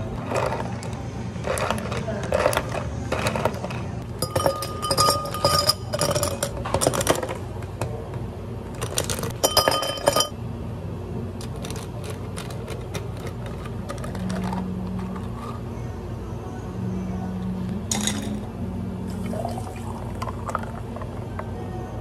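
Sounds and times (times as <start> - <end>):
cups and utensils clinking: 0.0 - 8.0, 8.8 - 10.4, 17.9 - 18.5, 19.1 - 21.5
steady low hum: 0.0 - 22.0.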